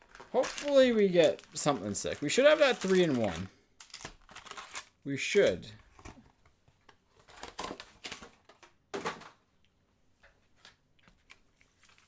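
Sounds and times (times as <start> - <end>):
wrapper crinkling: 0.0 - 5.5
cards rustling: 0.0 - 8.7.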